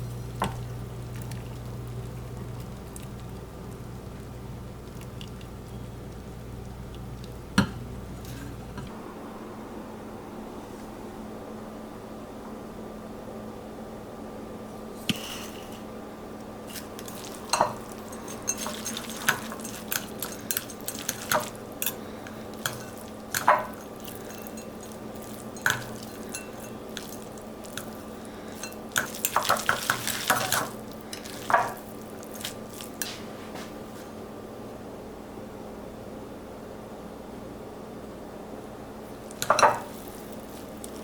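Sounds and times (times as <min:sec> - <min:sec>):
steady low hum: 0:00.0 - 0:41.0
utensils clinking against dishes: 0:16.7 - 0:33.2, 0:39.3 - 0:41.0.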